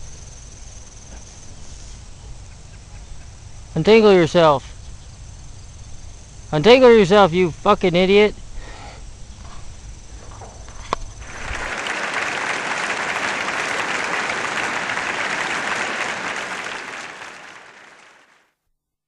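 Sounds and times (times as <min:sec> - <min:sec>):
applause: 0:11.2 - 0:18.5.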